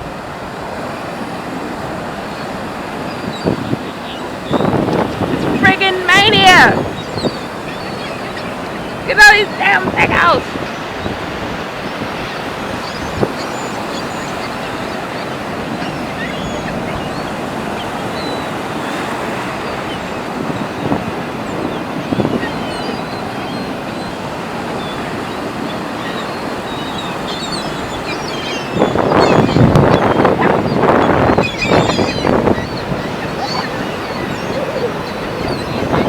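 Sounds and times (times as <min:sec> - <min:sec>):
surf washing: 0:00.0 - 0:36.0
wind: 0:00.0 - 0:36.0
short high bird calls: 0:26.0 - 0:36.0.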